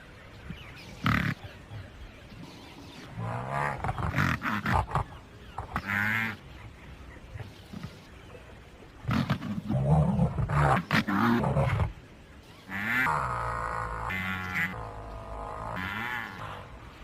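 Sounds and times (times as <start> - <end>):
rhinoceros grunting: 2.5 - 8.1.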